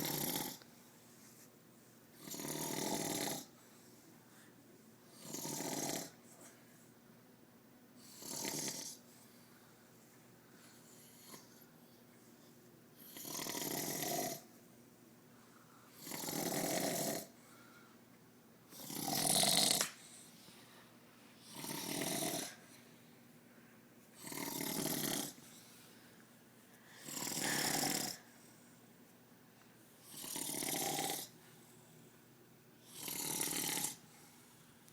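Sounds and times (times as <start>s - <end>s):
man snoring: 0.0s - 0.6s, 2.2s - 3.5s, 5.2s - 6.2s, 8.1s - 9.0s, 13.1s - 14.4s, 16.0s - 17.3s, 18.7s - 19.8s, 21.5s - 22.6s, 24.2s - 25.4s, 27.0s - 28.2s, 30.1s - 31.3s, 32.9s - 34.0s.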